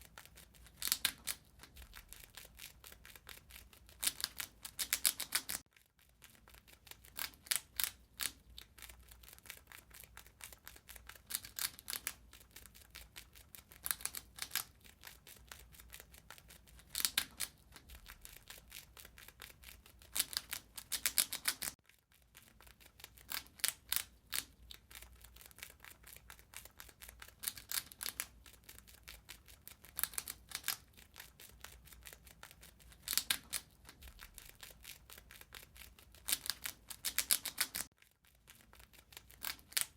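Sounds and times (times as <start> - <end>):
rat gnawing food: 0.0 - 39.9.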